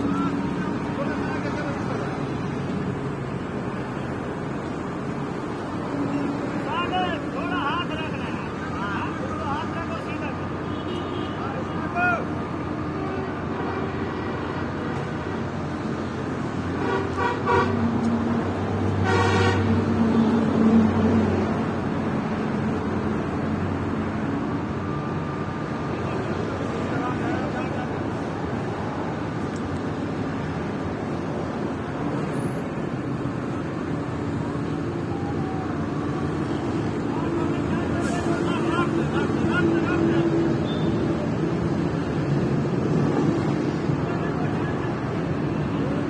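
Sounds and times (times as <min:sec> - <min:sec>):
vehicle horn toots: 0:16.8 - 0:17.8, 0:19.0 - 0:19.7.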